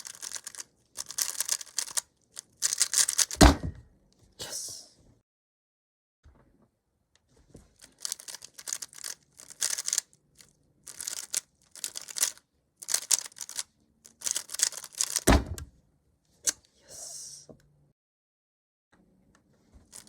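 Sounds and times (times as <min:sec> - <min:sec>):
plastic cube clicking: 0:00.0 - 0:03.4, 0:08.0 - 0:10.1, 0:10.9 - 0:15.3
loud thud: 0:03.3 - 0:03.8.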